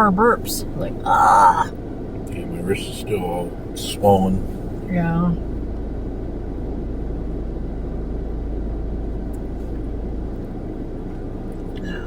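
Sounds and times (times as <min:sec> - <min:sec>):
car cabin rumble: 0:00.0 - 0:12.0.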